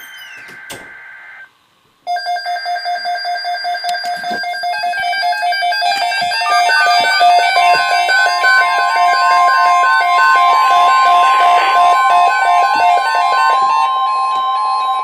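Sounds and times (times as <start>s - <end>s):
electronic alert music: 4.7s - 15.0s
buzzing digital data burst: 5.2s - 14.1s.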